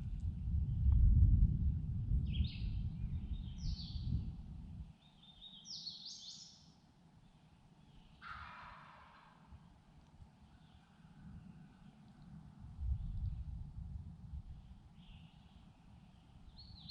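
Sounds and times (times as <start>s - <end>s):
low rumble: 0.0s - 4.9s, 12.6s - 14.7s
songbird singing: 2.2s - 13.5s, 14.4s - 16.9s.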